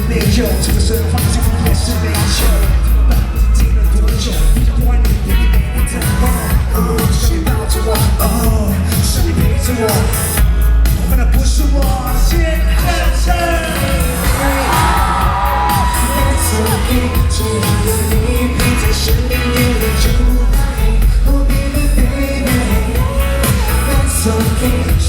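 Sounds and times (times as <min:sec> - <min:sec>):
live pop music: 0:00.0 - 0:25.0
pounding bass beat: 0:00.0 - 0:25.0
people singing: 0:12.8 - 0:25.0.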